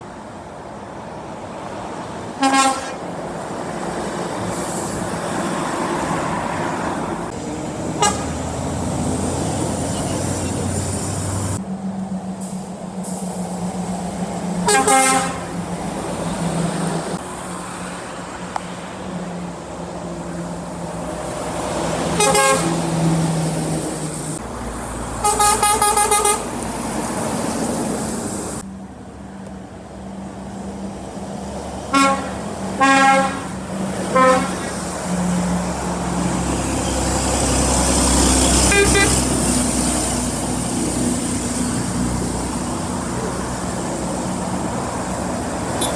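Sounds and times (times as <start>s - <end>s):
road traffic noise: 0.0s - 45.9s
truck horns honking: 2.4s - 3.2s, 7.4s - 11.6s, 14.6s - 15.8s, 22.0s - 23.3s, 25.2s - 26.6s, 31.9s - 35.6s, 38.2s - 39.6s, 45.7s - 45.9s.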